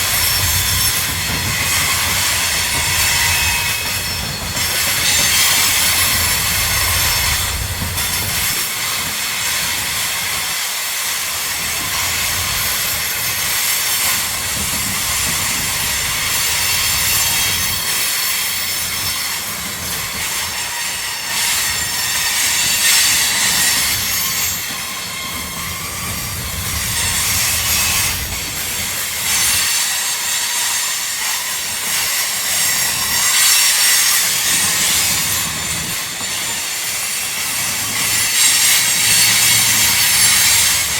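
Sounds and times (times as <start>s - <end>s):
train cars clattering and rumbling: 0.0s - 40.9s
train wheels squealing: 0.0s - 40.9s.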